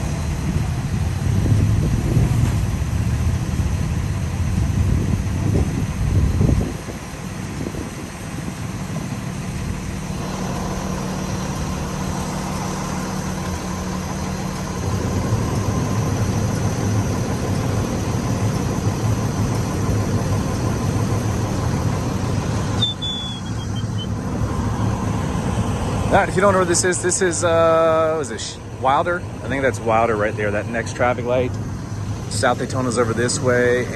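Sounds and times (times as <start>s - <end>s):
car engine idling: 0.0s - 33.9s
high falling chirp: 22.7s - 24.2s.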